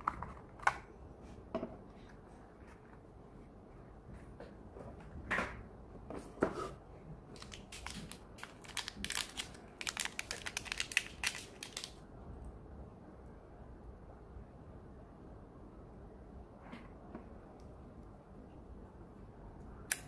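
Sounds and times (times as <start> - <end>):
plastic packaging crinkling: 7.3 - 12.0.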